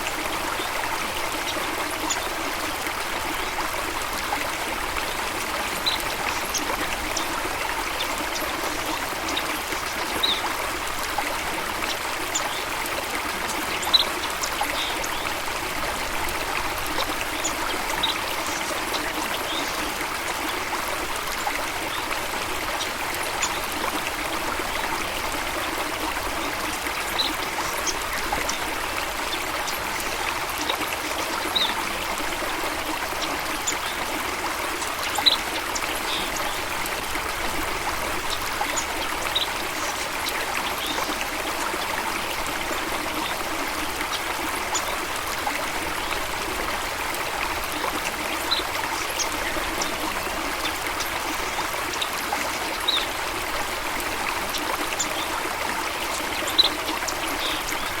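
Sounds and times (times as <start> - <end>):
flowing stream water: 0.0 - 58.0.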